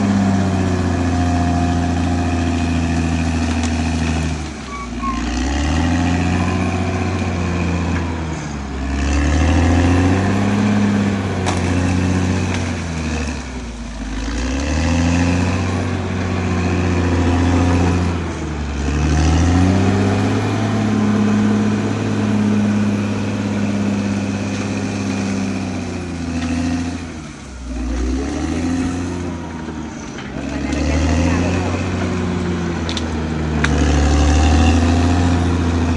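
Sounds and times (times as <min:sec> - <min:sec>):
bulldozer diesel engine under load: 0:00.0 - 0:35.9.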